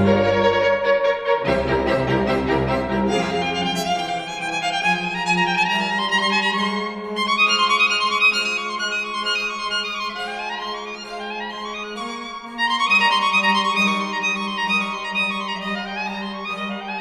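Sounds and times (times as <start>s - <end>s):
violin-led instrumental music: 0.0s - 17.0s.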